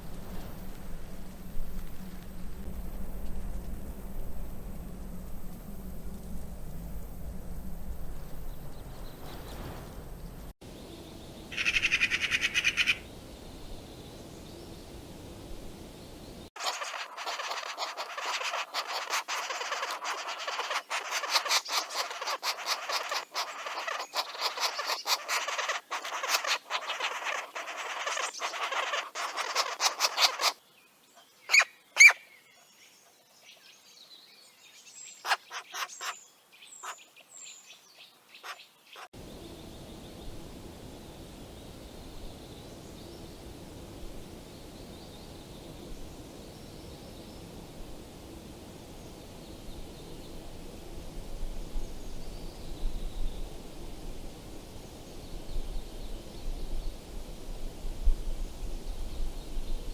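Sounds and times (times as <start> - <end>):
outdoor background noise: 0.0 - 59.9
birds chattering: 11.4 - 13.1, 16.6 - 30.6, 31.5 - 32.2
sliding bird chirps: 16.6 - 30.6.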